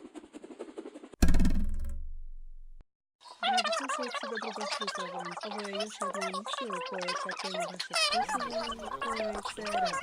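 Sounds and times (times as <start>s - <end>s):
drum roll rattle: 1.2s - 2.2s.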